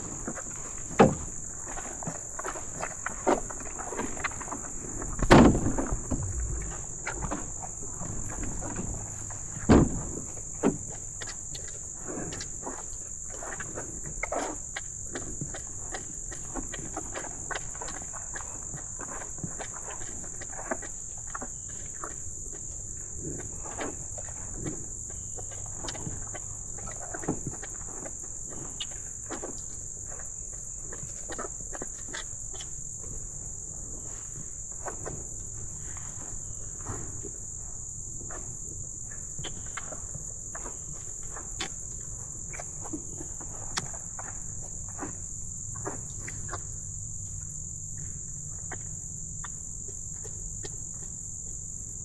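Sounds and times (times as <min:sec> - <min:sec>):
soft knocks and scuffs: 0:00.0 - 0:13.6
crickets trilling: 0:00.0 - 0:52.0
loud thumps: 0:05.0 - 0:10.3.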